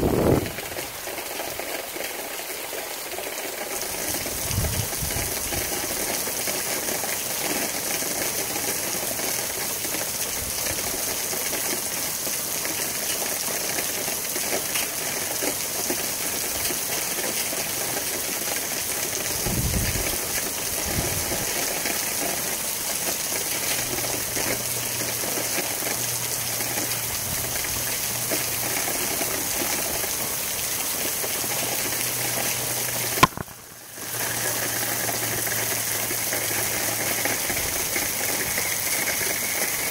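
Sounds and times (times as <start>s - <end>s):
wind buffeting microphone: 0.0s - 0.6s, 4.4s - 5.4s, 19.4s - 20.2s
wind and rain rushing: 0.0s - 2.0s, 3.5s - 14.6s, 15.2s - 39.9s
sharp click: 33.2s - 33.6s.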